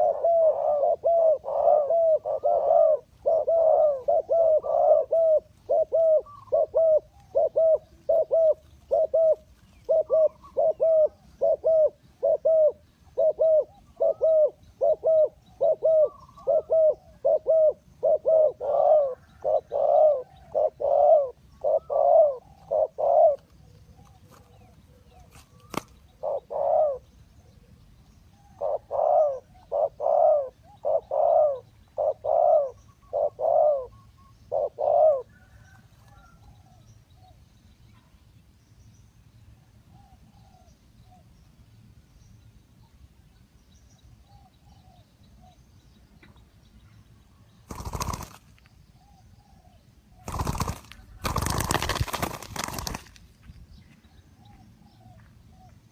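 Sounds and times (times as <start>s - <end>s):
dove cooing: 0.0s - 27.8s, 28.4s - 36.8s, 47.7s - 48.4s, 49.0s - 53.1s.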